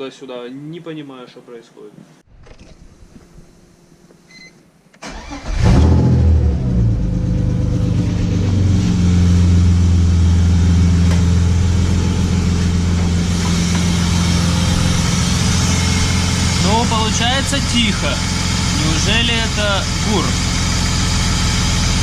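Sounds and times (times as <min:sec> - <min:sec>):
car engine starting and idling: 0:05.0 - 0:22.0.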